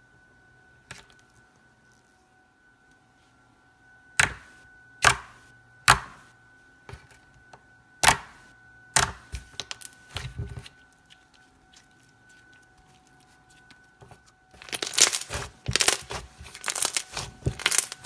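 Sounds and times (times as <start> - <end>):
slime clicking and crackling: 14.6 - 18.0
slime popping: 14.6 - 18.0.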